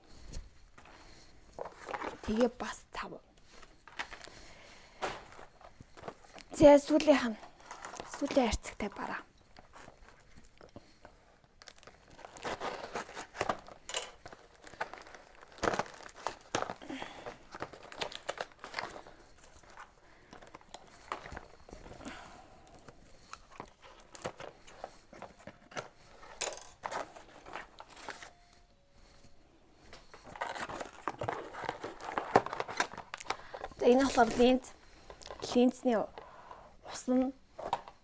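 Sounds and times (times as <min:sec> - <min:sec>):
packaging crinkling and tearing: 0:07.4 - 0:28.4, 0:30.0 - 0:35.5.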